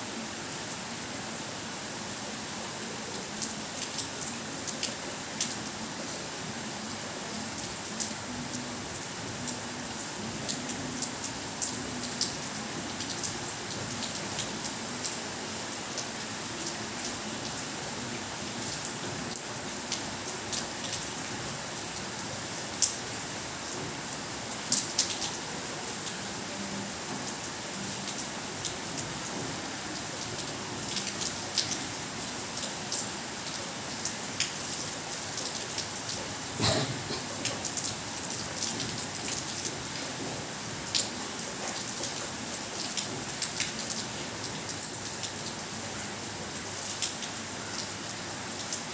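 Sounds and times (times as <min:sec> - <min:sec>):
heavy rain pouring: 0:00.0 - 0:48.9.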